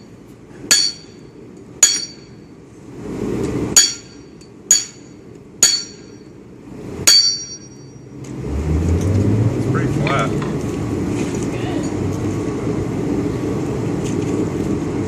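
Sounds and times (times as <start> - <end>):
hammer striking steel on anvil: 0.7 - 2.4, 3.8 - 6.3, 7.1 - 8.0.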